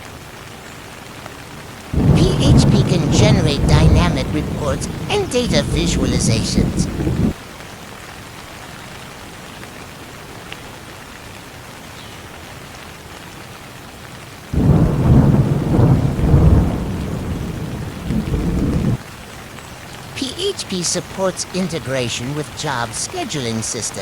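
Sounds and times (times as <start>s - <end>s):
steady rain: 0.0s - 24.0s
thunder rumbling: 2.0s - 7.4s, 14.6s - 19.0s.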